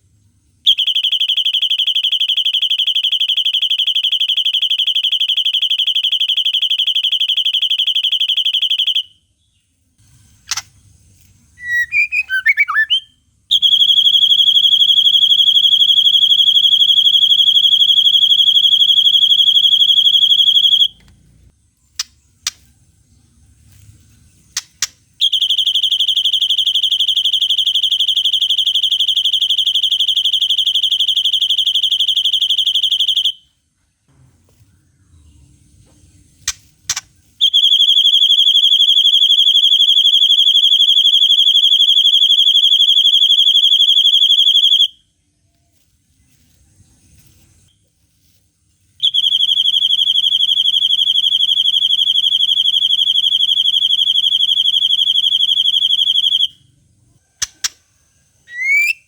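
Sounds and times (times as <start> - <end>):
bird chip notes: 11.6 - 13.0
bird singing rapid trills: 11.6 - 13.1.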